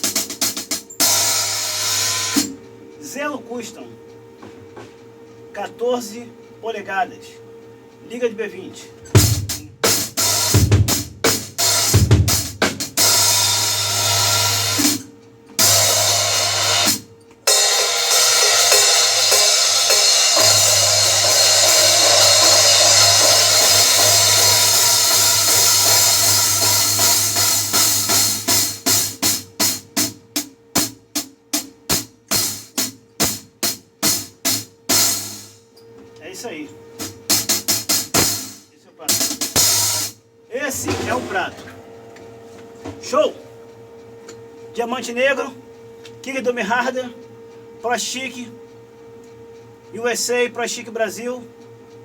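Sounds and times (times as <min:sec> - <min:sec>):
cymbal strikes and ringing: 0:00.0 - 0:02.6, 0:09.2 - 0:29.8, 0:34.0 - 0:35.6, 0:37.0 - 0:43.6
kick drum: 0:09.1 - 0:13.0, 0:20.0 - 0:35.1, 0:37.0 - 0:39.8.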